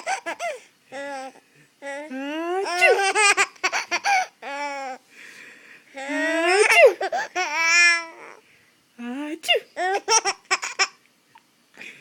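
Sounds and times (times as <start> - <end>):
baby laughing: 0.0 - 1.3, 2.6 - 5.0, 6.0 - 8.2, 9.8 - 11.0.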